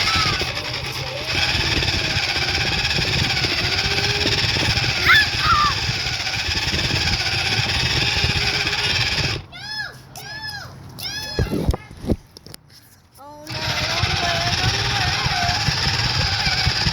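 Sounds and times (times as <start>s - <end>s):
chirping squeak: 0.0s - 6.6s
rough rumble: 0.0s - 9.5s, 13.5s - 16.9s
toy car electric motor whine: 0.0s - 9.5s, 13.5s - 16.9s.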